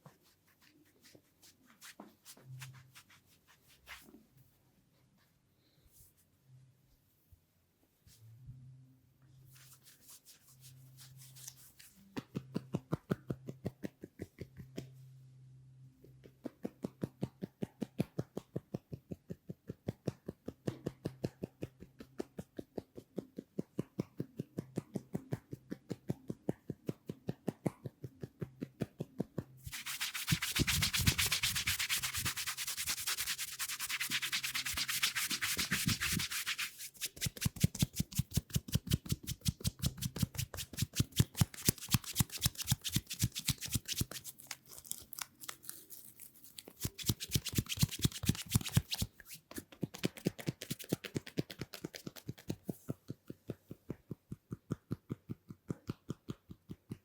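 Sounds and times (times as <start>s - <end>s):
hands rubbing skin and hair: 0.0s - 4.6s, 9.5s - 12.1s, 29.6s - 52.8s.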